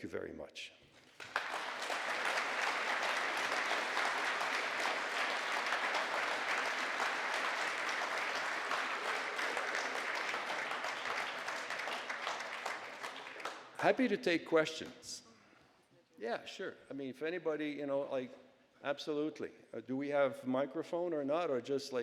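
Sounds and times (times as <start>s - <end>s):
audience applauding: 1.0s - 14.0s.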